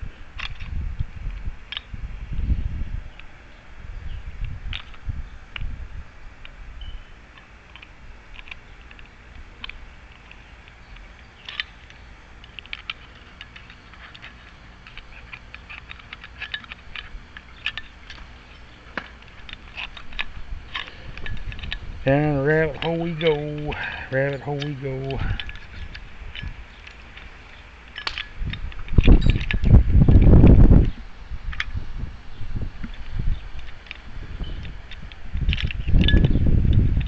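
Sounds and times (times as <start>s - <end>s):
low handling noise: 0.0s - 37.0s
metal lock parts clicking: 7.3s - 31.8s, 32.8s - 37.0s.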